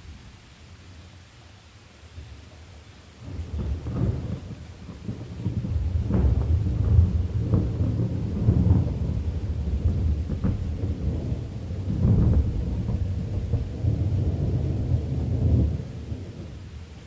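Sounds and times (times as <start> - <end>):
steady rain: 0.0 - 17.0
deep rolling thunder: 3.2 - 16.7.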